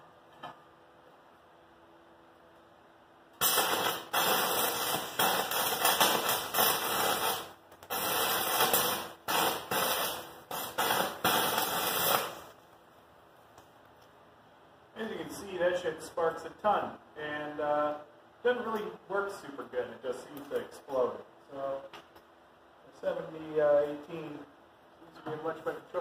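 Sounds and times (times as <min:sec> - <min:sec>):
welding arc crackling and sputtering: 0:03.3 - 0:12.8.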